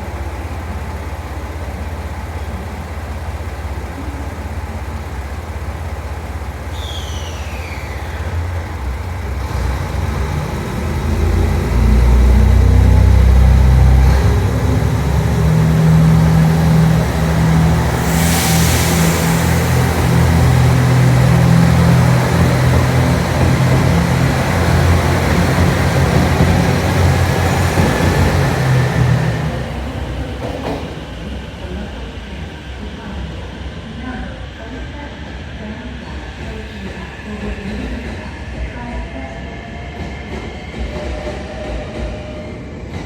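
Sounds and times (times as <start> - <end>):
train diesel engines rumbling: 0.0 - 43.0
hiss of air: 17.4 - 22.3.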